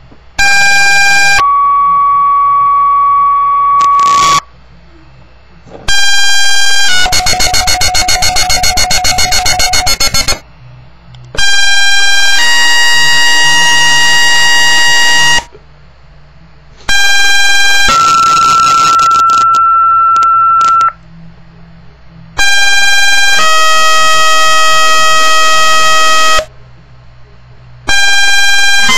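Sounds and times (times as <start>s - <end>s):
rapid pulsing beep: 5.9s - 10.4s, 16.9s - 21.0s
two-tone paging tones: 5.9s - 10.4s.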